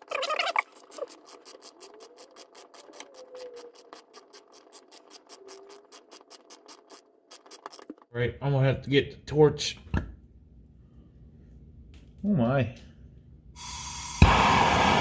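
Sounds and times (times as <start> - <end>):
ratchet wrench clicking: 0.5 - 8.0.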